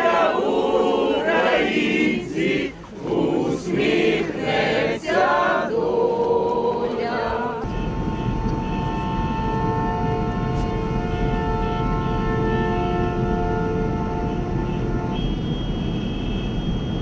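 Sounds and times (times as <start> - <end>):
group of voices singing: 0.0 - 7.7.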